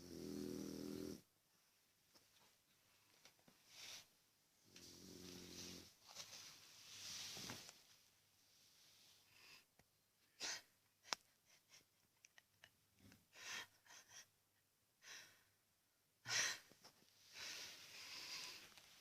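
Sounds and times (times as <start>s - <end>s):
pet snoring softly: 0.0s - 1.2s, 4.7s - 5.9s.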